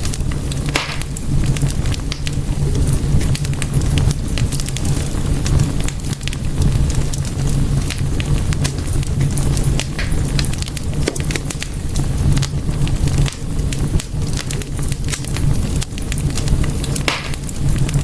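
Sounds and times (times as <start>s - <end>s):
low rumble of flames: 0.0s - 18.0s
wood fire crackling and popping: 0.0s - 18.0s.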